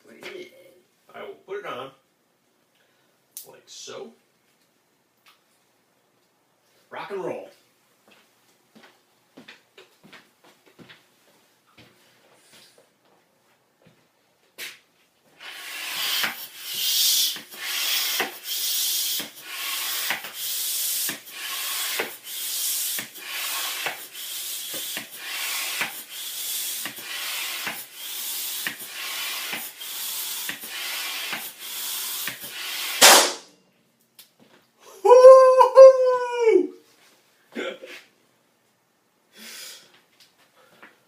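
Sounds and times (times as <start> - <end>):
balloon being rubbed: 15.4 - 33.2
balloon popping loudly: 15.4 - 33.5.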